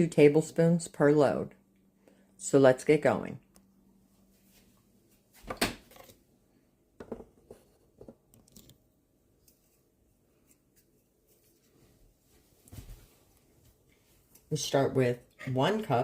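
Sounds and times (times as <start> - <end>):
handling rustles and knocks: 9.4 - 14.5.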